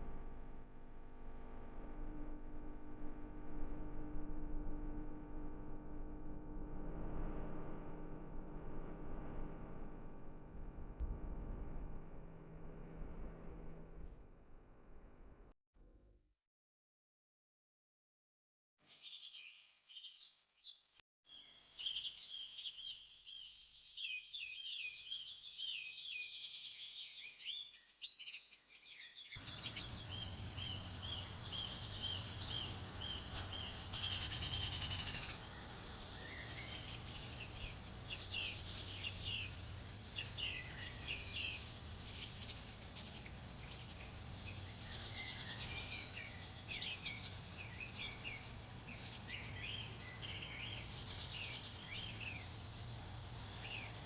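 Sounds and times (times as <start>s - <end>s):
loud high bird call: 29.4s - 37.5s
birds chirping: 29.4s - 52.6s
steady background hiss: 29.4s - 54.0s.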